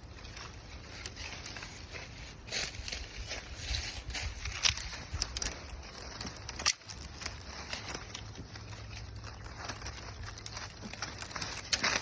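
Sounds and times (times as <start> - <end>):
vines and leaves rustling: 0.0 - 12.0.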